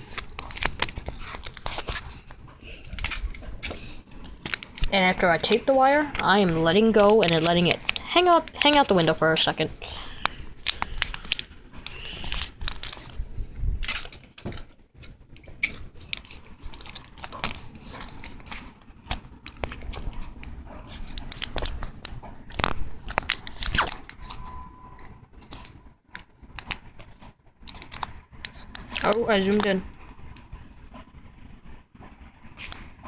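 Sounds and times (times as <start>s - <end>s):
crinkling and clicking handling: 0.0s - 31.2s
adhesive tape pulled and torn: 10.0s - 13.2s, 13.8s - 14.2s, 15.0s - 24.4s, 25.4s - 29.7s.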